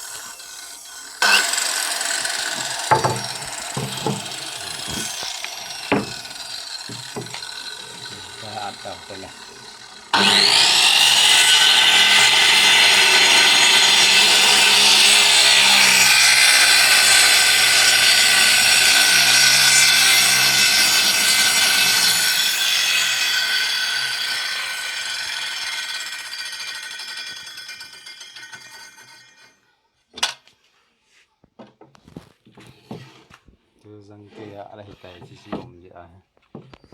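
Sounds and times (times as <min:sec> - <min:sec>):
circular saw whining: 0:00.0 - 0:29.6.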